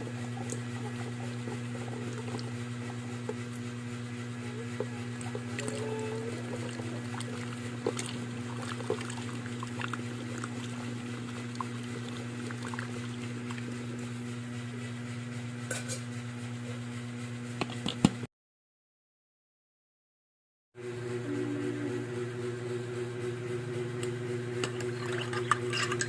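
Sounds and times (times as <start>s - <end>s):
steady low hum: 0.0s - 17.9s, 20.8s - 26.0s
tea simmering in a pot: 4.8s - 13.9s.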